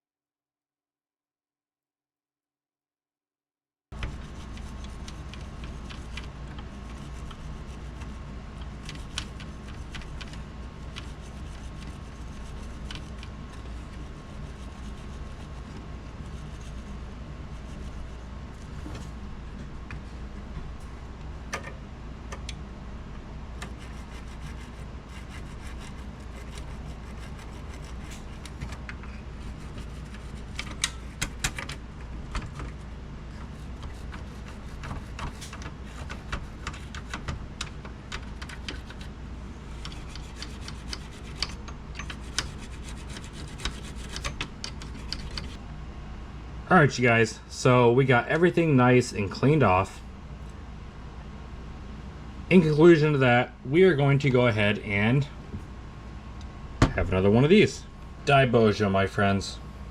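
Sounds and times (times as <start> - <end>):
steady low hum: 3.9 - 59.9
scratchy rubbing strokes: 4.0 - 20.4, 23.6 - 31.5, 32.4 - 37.3, 38.2 - 45.6.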